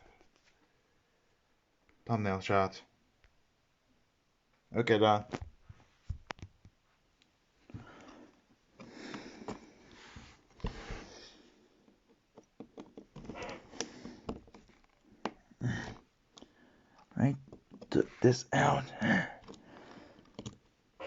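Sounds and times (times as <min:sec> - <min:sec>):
hands rubbing and scraping: 0:17.8 - 0:19.8.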